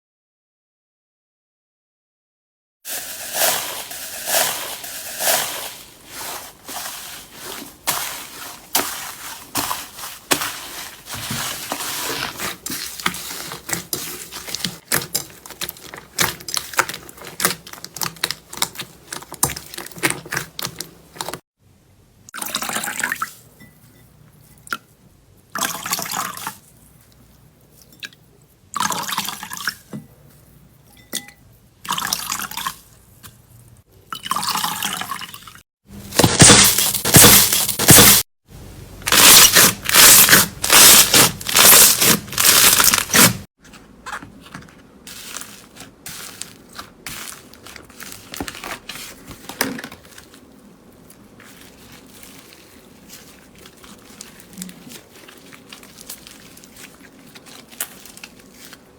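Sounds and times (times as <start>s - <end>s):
slime squishing by hand: 2.9s - 21.4s, 36.0s - 38.3s, 39.0s - 58.9s.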